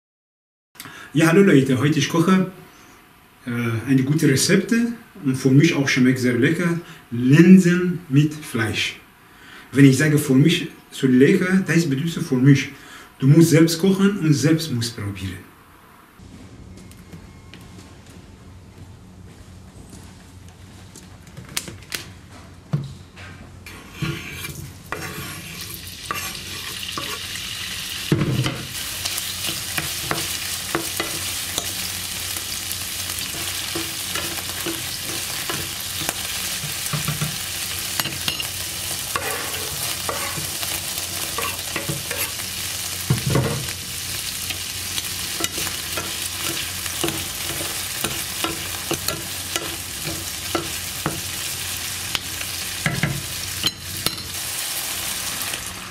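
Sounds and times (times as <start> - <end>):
food sizzling in hot oil: 24.4 - 55.9.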